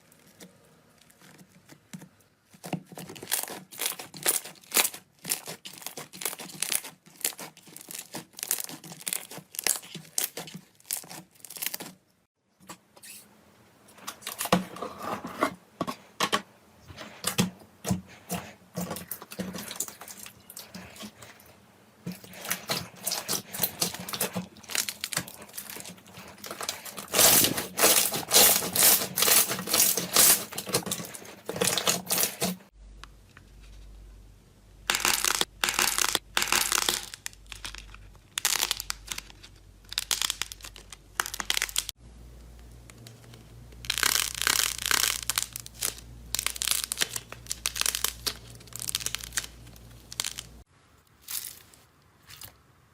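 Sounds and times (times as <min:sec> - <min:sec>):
slime crackling and popping: 0:02.6 - 0:12.0, 0:22.1 - 0:32.6, 0:34.9 - 0:42.0, 0:42.9 - 0:50.6.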